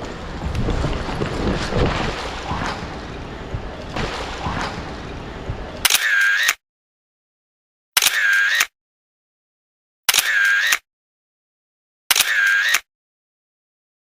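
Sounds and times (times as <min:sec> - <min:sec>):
wind rushing: 0:00.0 - 0:05.8
microphone handling noise: 0:00.4 - 0:05.7.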